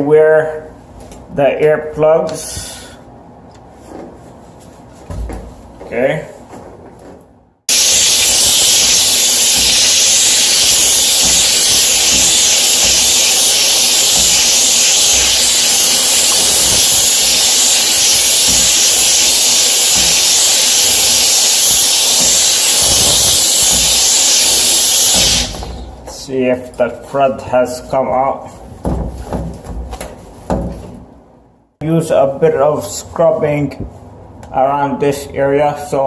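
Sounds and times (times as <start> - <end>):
steam cleaner hissing: 7.7 - 26.1.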